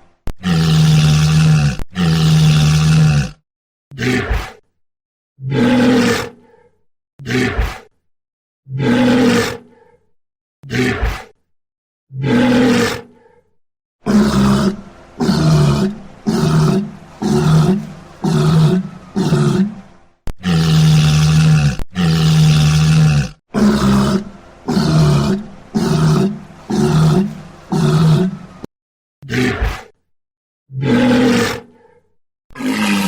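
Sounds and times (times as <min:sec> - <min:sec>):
walrus bellowing: 0:00.3 - 0:03.4, 0:08.8 - 0:09.6, 0:12.2 - 0:13.1, 0:14.0 - 0:28.7, 0:32.6 - 0:33.0.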